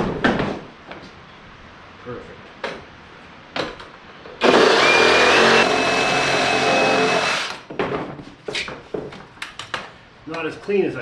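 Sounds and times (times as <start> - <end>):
power tool whining: 4.4 - 7.6.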